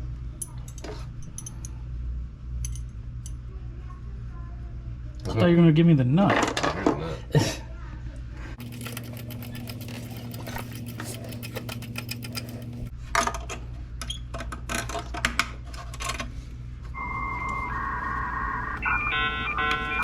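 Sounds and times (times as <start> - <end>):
steady low hum: 17.0 - 20.0.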